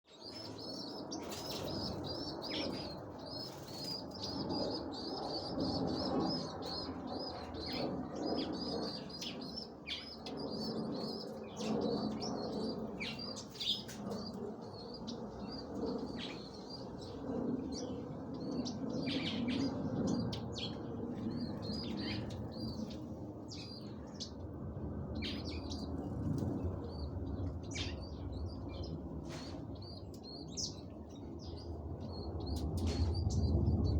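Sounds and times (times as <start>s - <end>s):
small birds chirping: 0.1s - 24.4s.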